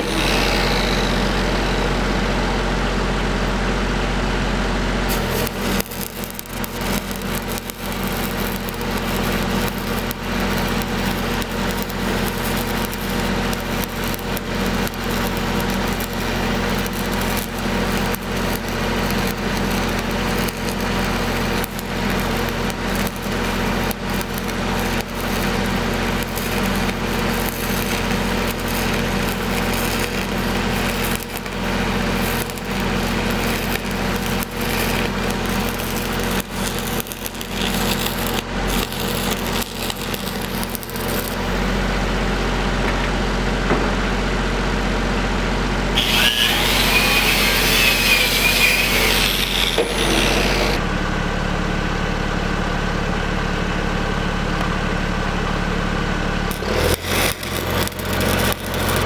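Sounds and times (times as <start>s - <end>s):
welding arc crackling: 0.0s - 1.9s, 5.1s - 41.7s, 46.0s - 50.8s, 56.5s - 59.0s
welder engine running: 0.0s - 42.9s, 45.7s - 59.0s.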